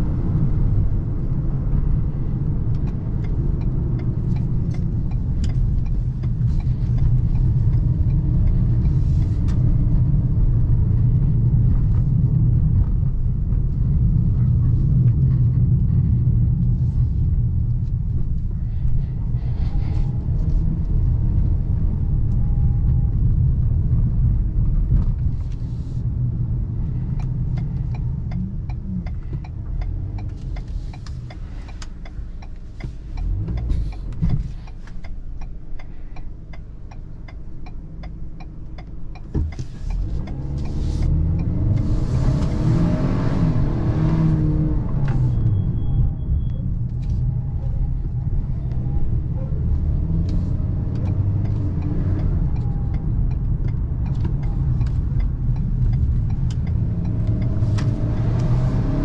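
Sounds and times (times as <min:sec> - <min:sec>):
car engine accelerating: 0:00.0 - 0:59.0
road noise: 0:00.0 - 0:59.0.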